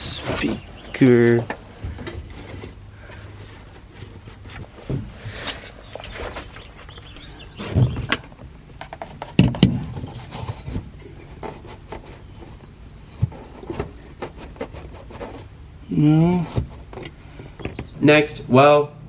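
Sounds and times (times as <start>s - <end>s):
heavy thumps: 0.0s - 11.6s
knocks and clunks: 0.0s - 12.2s, 16.3s - 18.0s.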